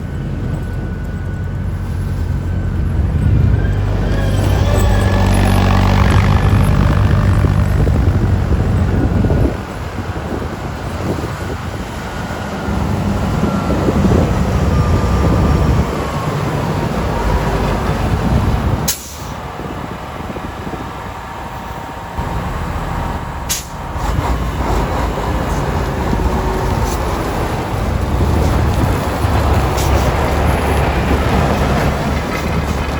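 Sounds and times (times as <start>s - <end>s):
heavy machinery engine drone: 0.0s - 32.9s
rushing noise: 1.7s - 32.9s.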